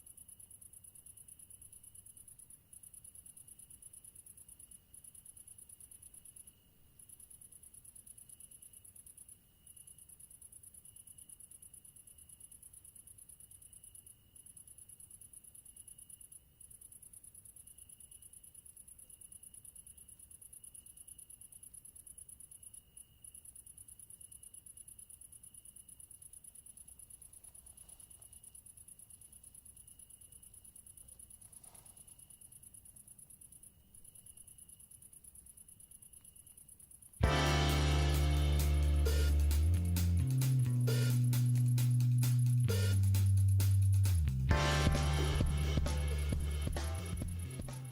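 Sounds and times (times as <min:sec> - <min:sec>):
crickets chirping: 0:00.0 - 0:47.9
music: 0:37.2 - 0:47.9.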